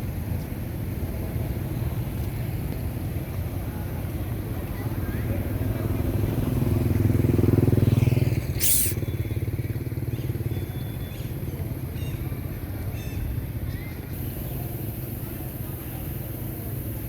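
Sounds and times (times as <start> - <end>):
sharp hiss: 8.5 - 9.1
vehicle engine running: 14.2 - 17.0.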